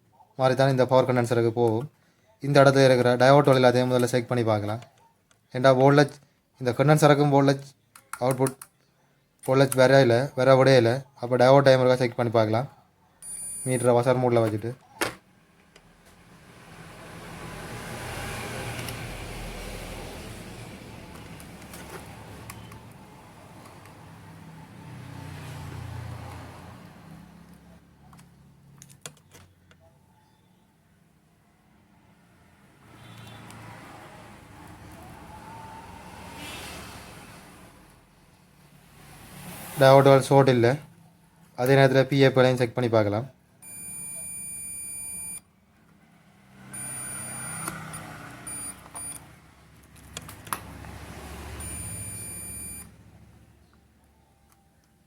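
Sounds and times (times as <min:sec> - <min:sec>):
multimeter beeping: 0:13.2 - 0:14.1, 0:43.6 - 0:45.4, 0:46.8 - 0:49.3, 0:51.6 - 0:52.9.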